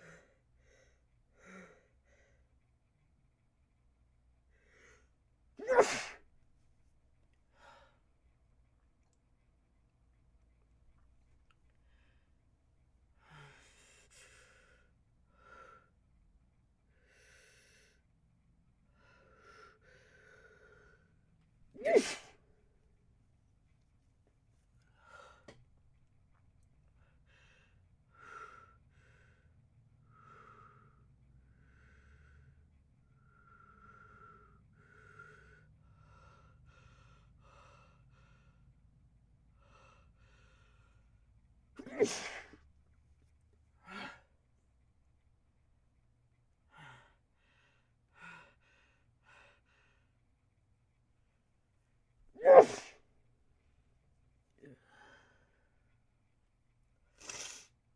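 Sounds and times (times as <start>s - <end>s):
quick gasping breaths: 21.8s - 22.4s, 26.9s - 38.8s, 52.4s - 53.1s, 57.2s - 57.8s
person breathing heavily: 33.2s - 38.6s, 52.4s - 52.9s.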